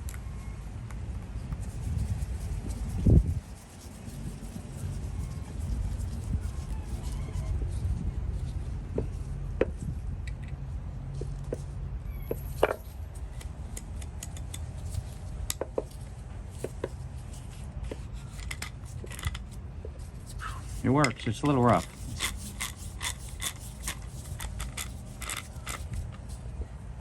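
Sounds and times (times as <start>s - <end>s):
steady low hum: 0.0s - 27.0s
ratchet metallic clicks: 12.7s - 16.1s, 21.0s - 26.3s.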